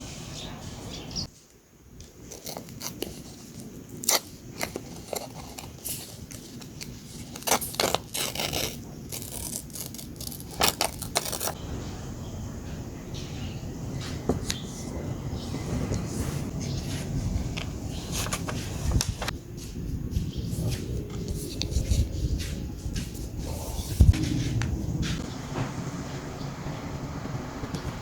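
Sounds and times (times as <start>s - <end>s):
paper rustling and crinkling: 2.1s - 11.6s, 16.2s - 19.4s, 20.3s - 24.2s.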